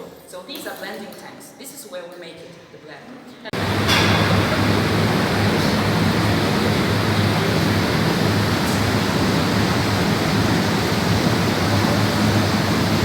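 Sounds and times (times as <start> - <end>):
loud rushing ventilation noise: 3.5 - 13.0
low wavering hum: 3.6 - 13.0.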